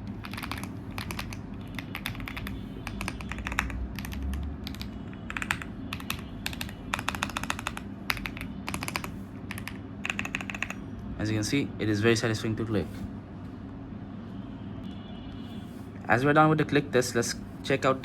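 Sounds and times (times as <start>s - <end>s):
typing on mechanical keyboard: 0.0s - 10.8s.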